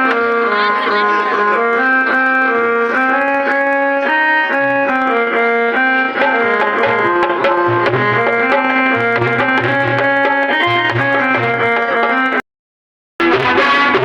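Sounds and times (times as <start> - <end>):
melody of held notes: 0.0 - 12.4
tabla hand drum strokes: 6.2 - 12.4.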